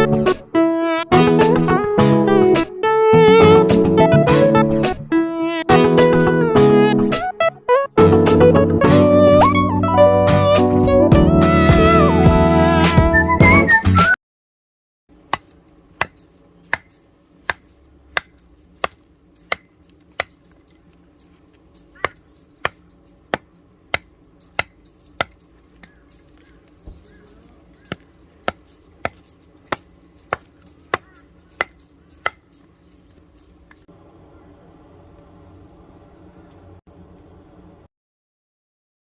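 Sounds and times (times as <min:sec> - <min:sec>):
knife chopping on cutting board: 0:15.3 - 0:16.9, 0:17.5 - 0:20.3.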